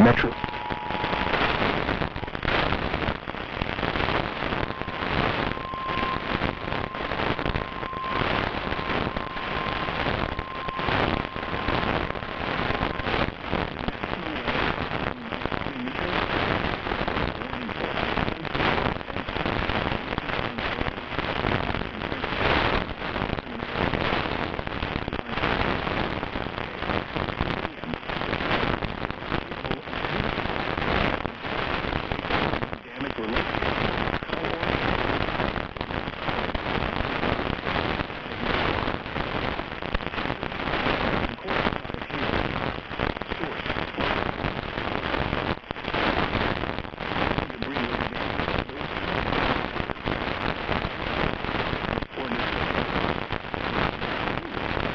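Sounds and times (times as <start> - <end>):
faint steady tone: 0.0 - 42.7
radio static crackling hiss: 0.0 - 54.9.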